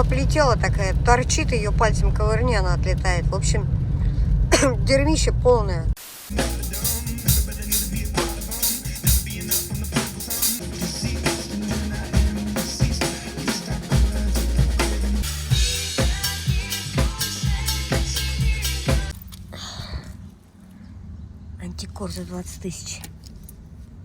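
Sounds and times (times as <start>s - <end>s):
drum kit playing a busy beat: 6.3s - 19.1s
low bass line: 6.3s - 19.2s.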